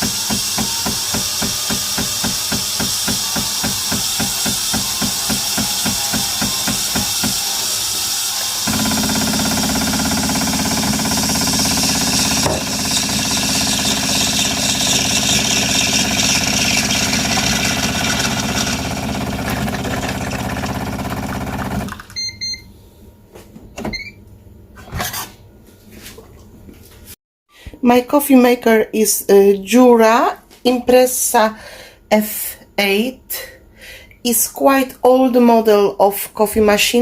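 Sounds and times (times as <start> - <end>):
coffee machine buzzing: 0.0 - 22.0.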